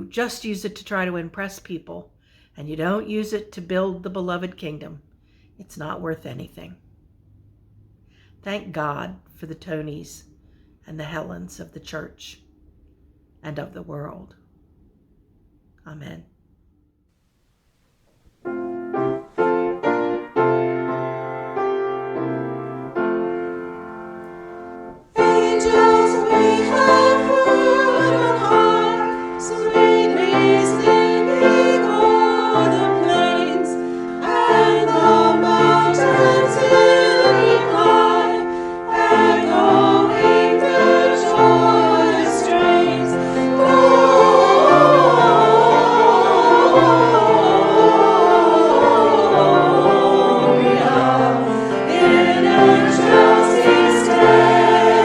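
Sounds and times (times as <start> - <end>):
instrumental accompaniment: 18.4 - 55.0
choir singing: 18.8 - 55.0.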